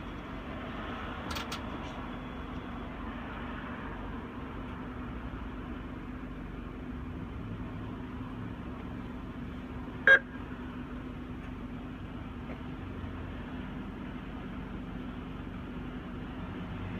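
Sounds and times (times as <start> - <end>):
car engine idling: 4.2 - 16.4.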